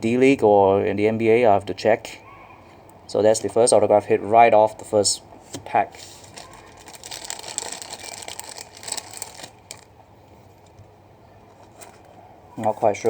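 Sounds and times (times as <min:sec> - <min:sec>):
faint handling noise: 0:05.5 - 0:13.0.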